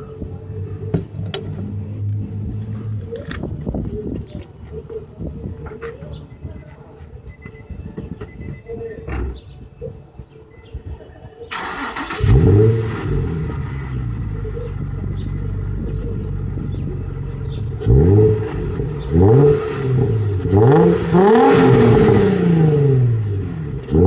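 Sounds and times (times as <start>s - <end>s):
car engine idling: 11.5s - 24.0s
car engine starting: 11.5s - 24.0s.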